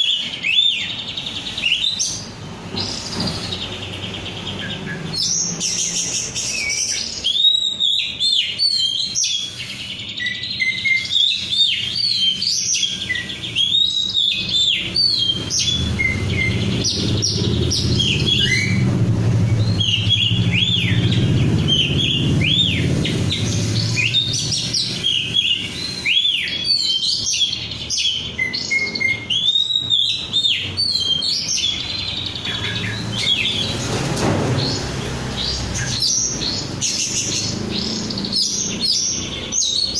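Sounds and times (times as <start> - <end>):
bird singing whistled notes: 0.0 - 18.9, 19.5 - 33.8, 34.6 - 39.9
low rumble: 15.4 - 24.7.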